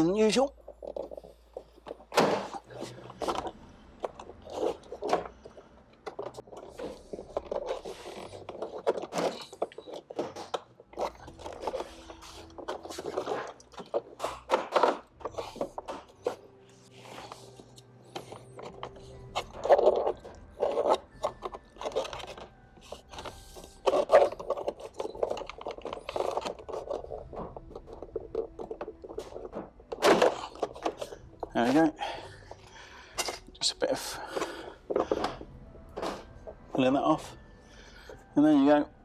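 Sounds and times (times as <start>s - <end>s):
plastic panel scraping: 1.9s - 31.9s.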